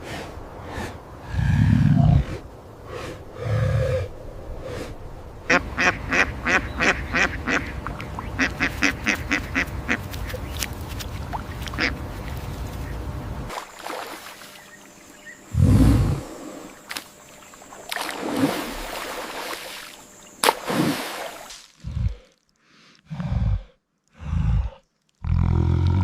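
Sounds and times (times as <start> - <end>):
ducks quacking: 5.5 - 10.5, 11.5 - 12.2.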